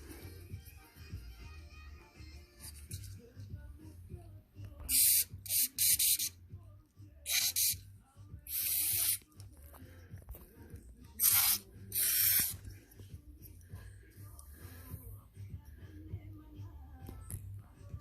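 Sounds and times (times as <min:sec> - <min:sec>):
short hissing sprays: 0:11.2 - 0:12.6.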